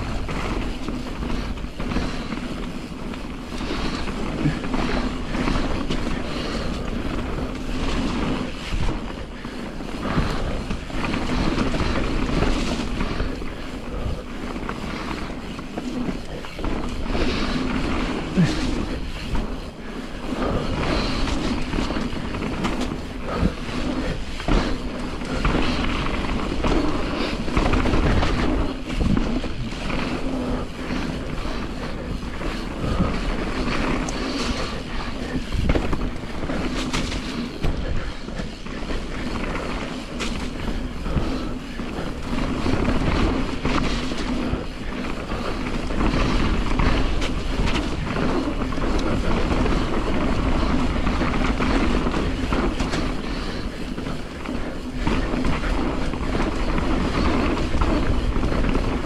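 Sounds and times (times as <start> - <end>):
bike rattling over rough ground: 0.0 - 59.0
bike tyres rushing on dirt: 0.0 - 59.0.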